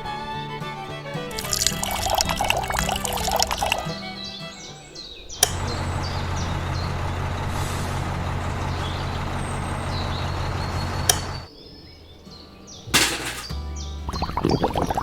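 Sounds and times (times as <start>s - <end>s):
heavy vehicle engine humming: 5.4s - 11.5s.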